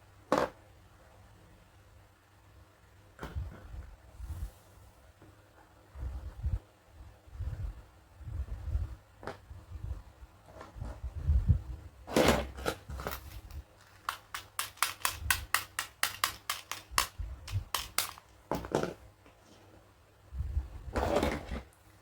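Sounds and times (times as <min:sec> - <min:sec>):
plastic toy pieces rustling: 0:12.9 - 0:18.3
sharp plastic clicks: 0:13.1 - 0:18.4.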